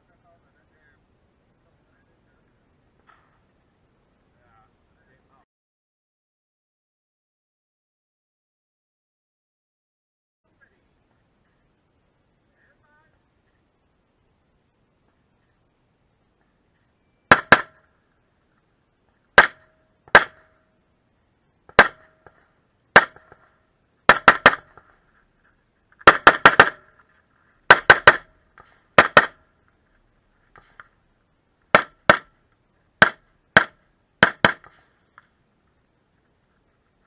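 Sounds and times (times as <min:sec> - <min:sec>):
rifle shots: 0:17.3 - 0:17.8, 0:19.4 - 0:20.5, 0:21.7 - 0:22.4, 0:23.0 - 0:23.5, 0:24.1 - 0:24.9, 0:26.0 - 0:27.0, 0:27.7 - 0:29.4, 0:33.0 - 0:34.9.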